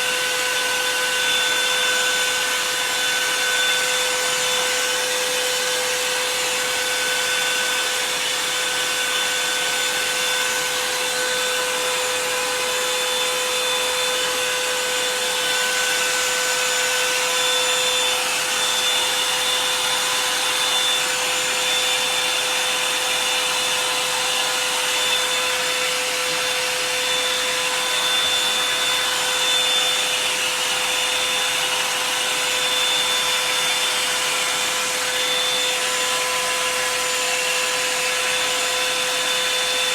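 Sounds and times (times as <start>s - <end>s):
hair dryer blowing: 0.0s - 39.9s.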